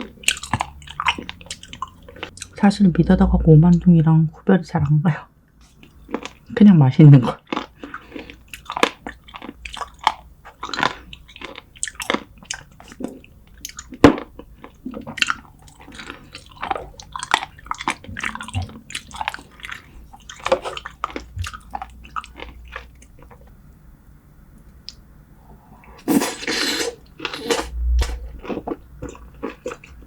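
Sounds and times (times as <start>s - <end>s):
person biting and chewing: 26.1s - 30.0s.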